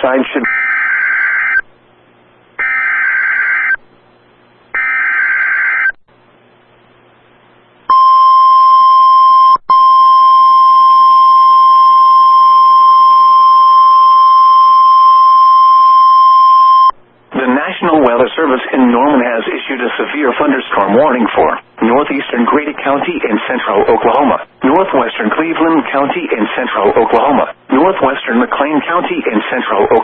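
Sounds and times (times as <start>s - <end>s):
warning alarm tone: 0.4s - 1.6s, 2.6s - 3.8s, 4.8s - 6.0s, 7.9s - 17.0s.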